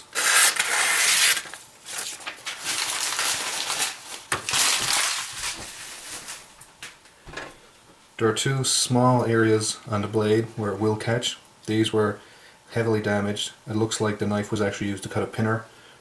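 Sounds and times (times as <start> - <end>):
knife slicing paper: 0.1 - 6.5
paper rustle: 1.0 - 6.7.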